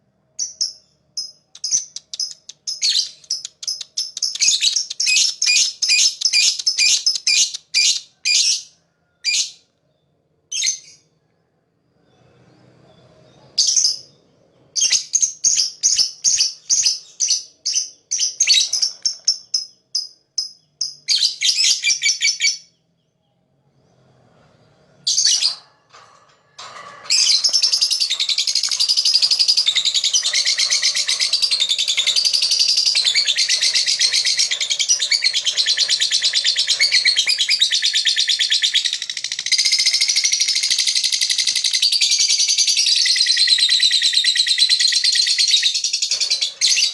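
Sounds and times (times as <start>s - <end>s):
bird chirping and trilling: 0.4s - 8.7s, 27.1s - 46.9s
rapid chattering bird trill: 1.4s - 7.9s, 27.2s - 46.9s.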